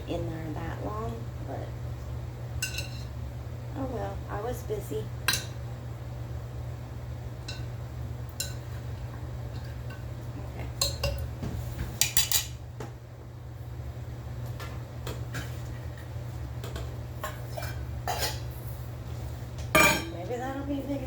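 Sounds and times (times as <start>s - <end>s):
steady low hum: 0.0s - 21.0s
utensils and dishes clinking: 2.6s - 3.1s, 12.0s - 12.6s, 16.6s - 18.5s, 19.8s - 20.3s.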